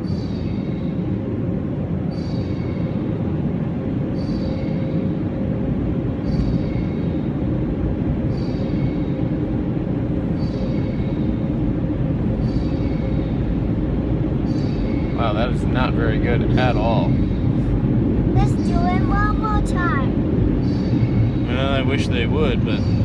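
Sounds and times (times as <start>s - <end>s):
car wash dryer blowers running: 4.8s - 23.0s.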